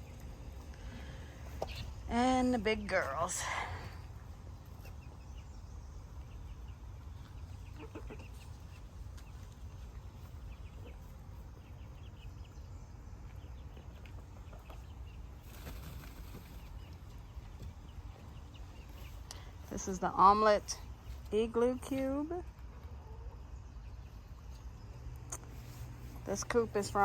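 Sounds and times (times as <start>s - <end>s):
hens clucking: 3.0s - 19.4s, 20.0s - 24.5s.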